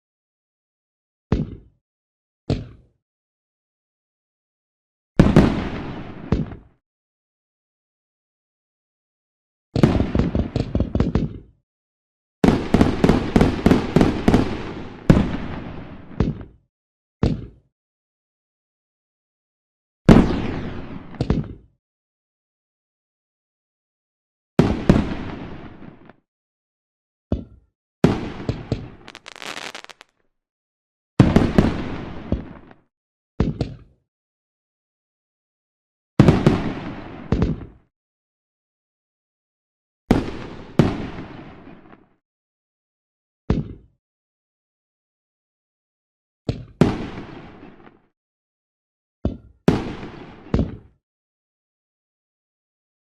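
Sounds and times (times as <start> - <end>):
fireworks bangs and crackling: 5.2 - 6.7, 9.8 - 11.2, 12.4 - 16.5, 28.1 - 30.1, 31.2 - 32.8, 40.1 - 41.6, 46.8 - 47.7
fireworks bangs: 29.1 - 30.1
fireworks crackle: 29.1 - 30.1.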